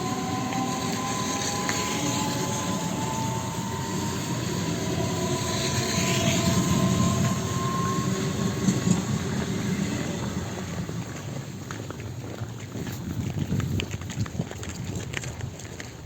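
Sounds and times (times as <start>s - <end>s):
faint motor whine: 0.0s - 11.8s
train wheels rumbling on rails: 0.0s - 15.6s.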